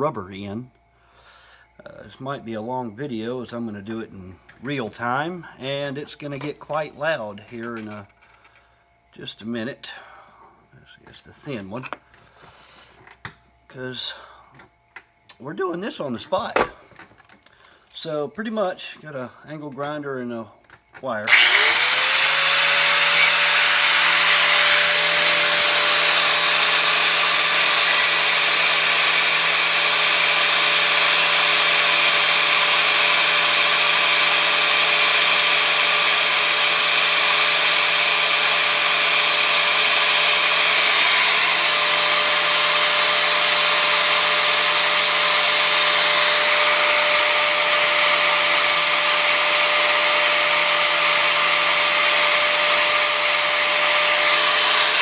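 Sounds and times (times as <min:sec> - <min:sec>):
angle grinder grinding metal: 0:21.3 - 0:55.0.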